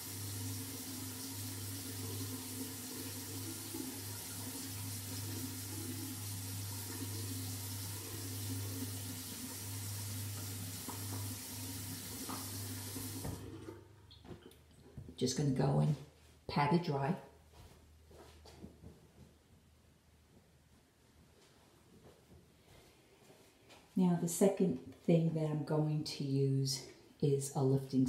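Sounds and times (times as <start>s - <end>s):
tap running into a sink: 6.5s - 14.4s.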